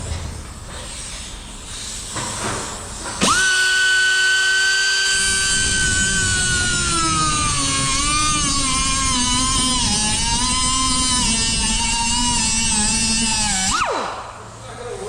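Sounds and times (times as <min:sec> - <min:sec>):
rotary grinder whining: 0:03.2 - 0:13.9.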